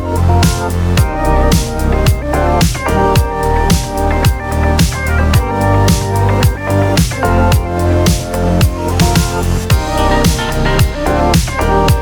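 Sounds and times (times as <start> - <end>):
crisp high percussion: 0.0 - 12.0
held synth chords: 0.0 - 12.0
kick drum: 0.0 - 12.0.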